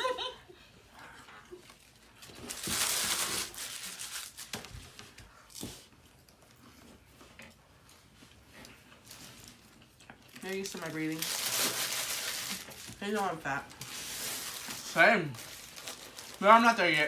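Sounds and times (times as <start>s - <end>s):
paper wrapper crinkling: 1.6s - 5.6s, 9.0s - 17.0s.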